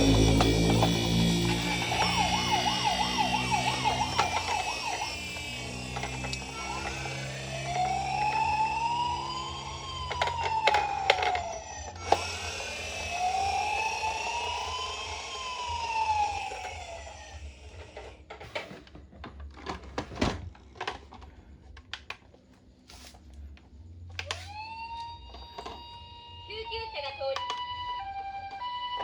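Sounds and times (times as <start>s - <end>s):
toy siren wailing: 0.0s - 17.8s, 24.2s - 29.0s.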